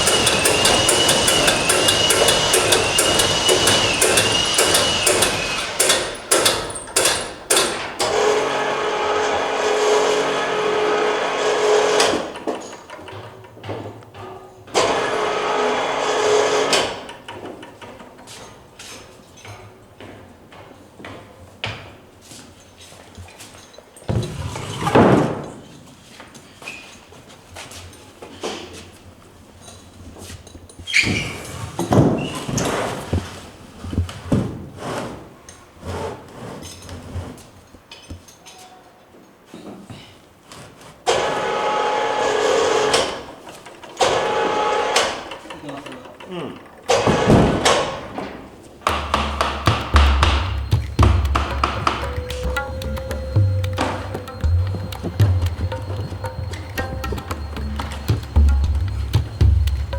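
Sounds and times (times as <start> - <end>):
small power tool running: 0.0 - 6.6
tools knocking on wood: 48.8 - 59.9.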